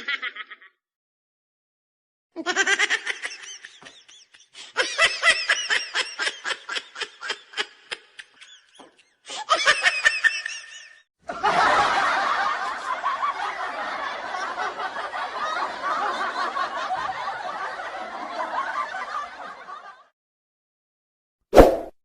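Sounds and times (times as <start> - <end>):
group of people laughing: 0.0 - 0.8, 2.4 - 20.1.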